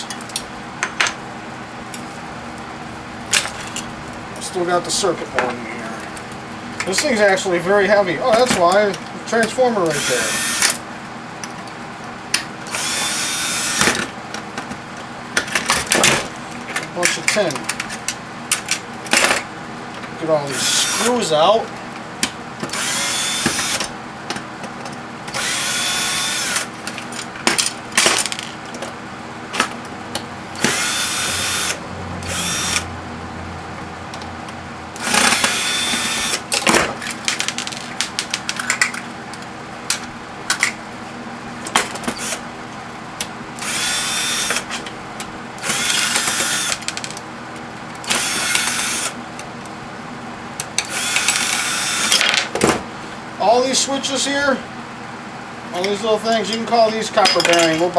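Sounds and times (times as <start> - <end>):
power drill whirring: 9.9 - 10.8, 12.7 - 13.8, 20.5 - 21.1, 22.7 - 23.9, 25.3 - 26.7, 30.6 - 32.9, 35.0 - 36.4, 43.6 - 44.7, 45.6 - 46.8, 48.1 - 49.2, 50.8 - 52.2
metal parts and screws clinking: 56.4 - 57.9.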